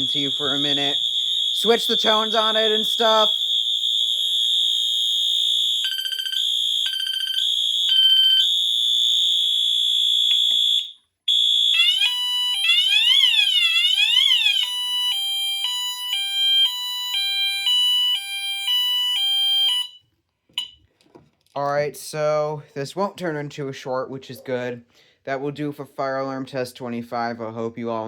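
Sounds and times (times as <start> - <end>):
continuous high alarm horn tone: 0.0 - 20.0
rising and falling alarm sweep: 0.0 - 20.0
short pulsed alarm tones: 0.0 - 20.0
two-tone high-low alarm: 0.0 - 20.0.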